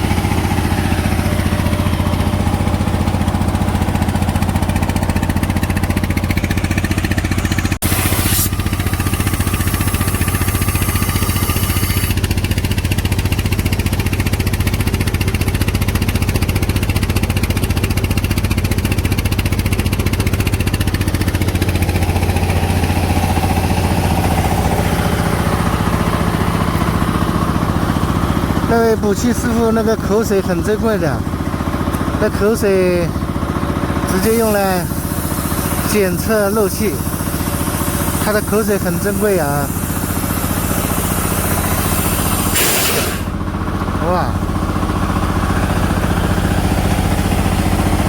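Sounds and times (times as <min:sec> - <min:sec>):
engine running: 0:00.0 - 0:48.0
high hissing air: 0:07.8 - 0:12.2, 0:34.1 - 0:43.4.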